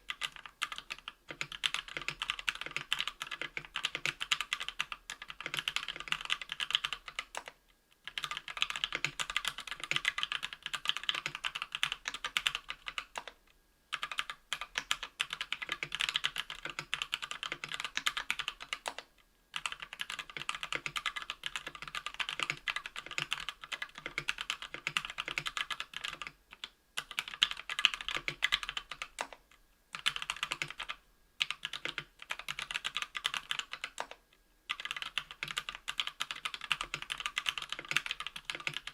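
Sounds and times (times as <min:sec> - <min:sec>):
fast keyboard typing clacks: 0:00.1 - 0:07.5, 0:08.1 - 0:13.3, 0:14.0 - 0:19.0, 0:19.6 - 0:26.4, 0:27.0 - 0:29.3, 0:30.0 - 0:34.1, 0:34.7 - 0:38.9.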